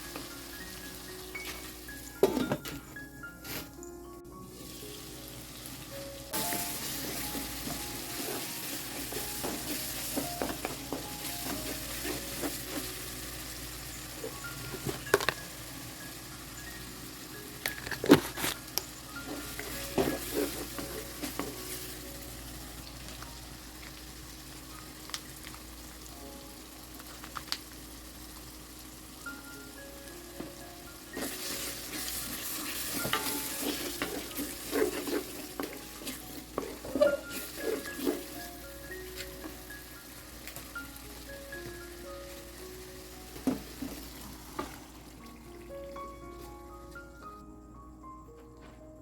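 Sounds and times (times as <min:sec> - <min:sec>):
food sizzling in a pot: 0:00.0 - 0:47.2
spoon knocking and scraping pot: 0:06.9 - 0:12.9, 0:19.3 - 0:21.6, 0:32.7 - 0:38.3.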